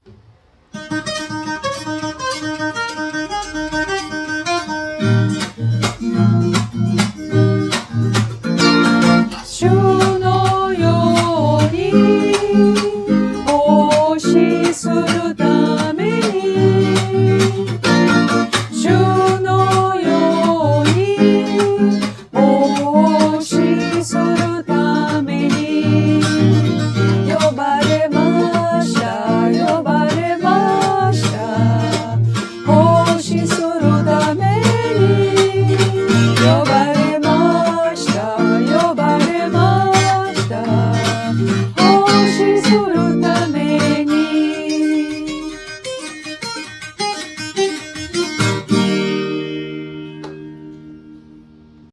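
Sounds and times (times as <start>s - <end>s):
strummed acoustic guitar: 0.0s - 51.9s
bass line: 3.2s - 14.5s
gliding melody line: 8.4s - 21.3s
person singing: 8.6s - 45.8s.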